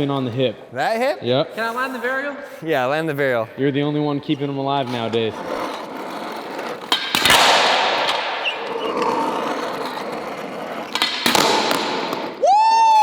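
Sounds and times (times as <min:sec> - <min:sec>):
skateboard rolling: 0:04.3 - 0:12.4
skateboard clacking down: 0:04.8 - 0:12.4.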